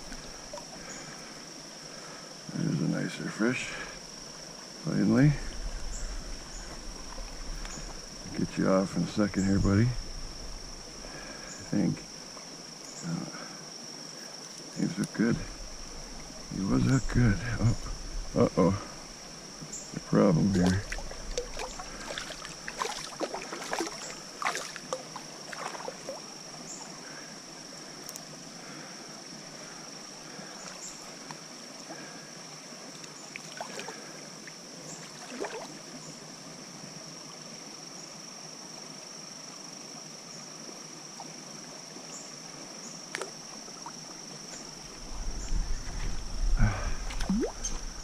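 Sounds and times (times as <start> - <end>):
stream water running: 0.0 - 48.0
small splashes and clicks: 20.5 - 26.2, 28.0 - 28.3, 32.9 - 34.0, 43.1 - 44.8, 47.0 - 47.8.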